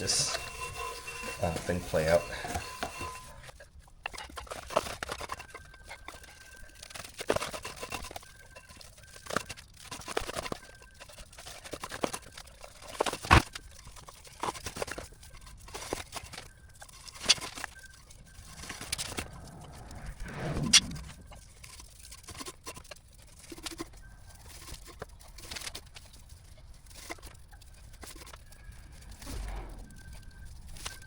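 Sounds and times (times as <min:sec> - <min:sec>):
wrap rustling and scraping: 0:00.0 - 0:03.6.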